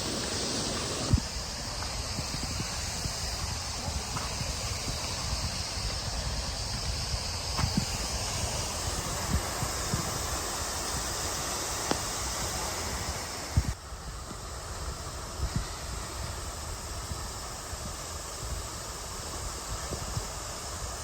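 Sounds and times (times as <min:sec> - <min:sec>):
waterfall rushing: 0:00.0 - 0:13.8
wind buffeting microphone: 0:00.0 - 0:21.0.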